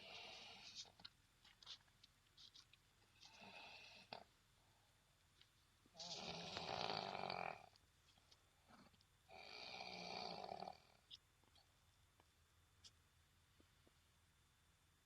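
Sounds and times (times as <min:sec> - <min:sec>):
person snoring: 0:06.0 - 0:07.7, 0:09.3 - 0:11.0.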